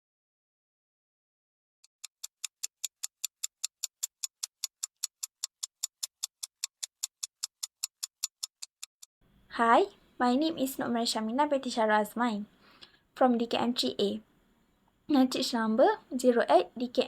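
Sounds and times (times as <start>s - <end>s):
clock ticking fast: 2.0s - 9.1s.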